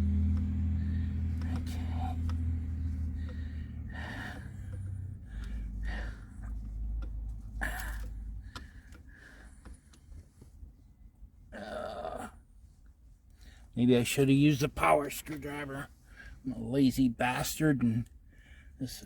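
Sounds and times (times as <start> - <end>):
low steady rumble: 0.0 - 19.0
man breathing and gasping: 0.7 - 6.8, 7.5 - 9.8.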